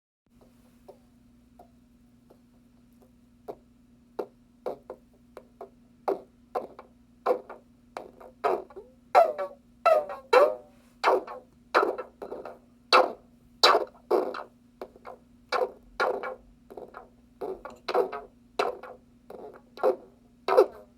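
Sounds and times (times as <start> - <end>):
synthesizer percussive blips: 9.2 - 14.5.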